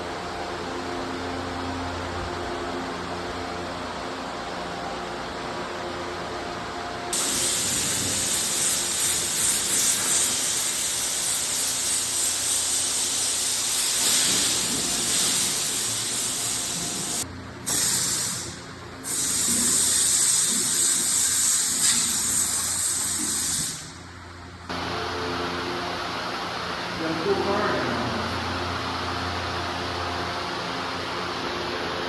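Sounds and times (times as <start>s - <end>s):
high-pressure spray hissing: 7.1s - 24.0s.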